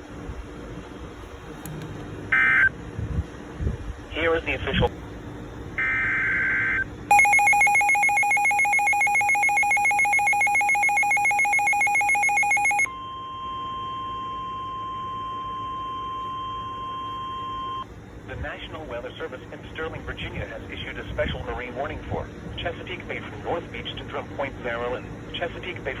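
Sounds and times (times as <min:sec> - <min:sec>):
digital data tones: 0:05.8 - 0:12.9
pulsing two-tone attention signal: 0:05.8 - 0:17.9
steady single alert tone: 0:07.1 - 0:17.8.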